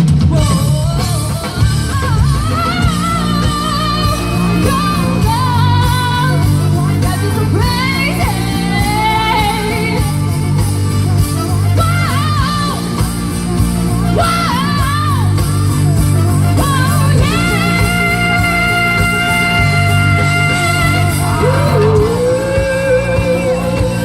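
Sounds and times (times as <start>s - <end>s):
pop-rock band music: 0.0s - 24.0s
woman singing vocal runs: 0.4s - 10.3s.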